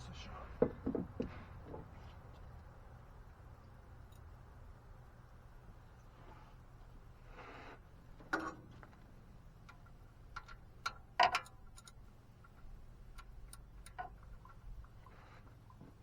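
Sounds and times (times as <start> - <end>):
hand tools knocking on metal: 0.6 - 1.9.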